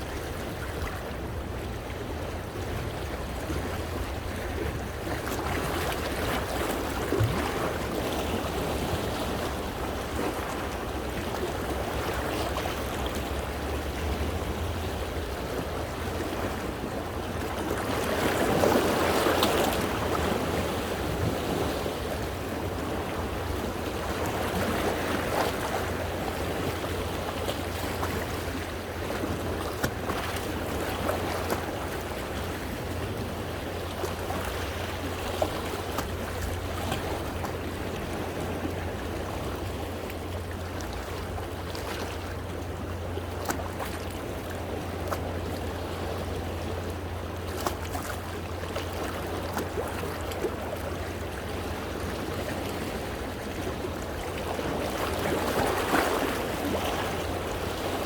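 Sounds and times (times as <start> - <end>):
sea waves washing against rocks: 0.0 - 58.0.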